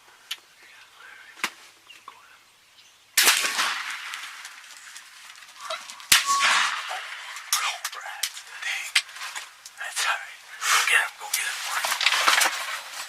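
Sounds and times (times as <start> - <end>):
echo of gunshots: 3.2 - 4.7, 6.0 - 9.0
shotgun blasts: 3.2 - 4.8, 6.0 - 7.7.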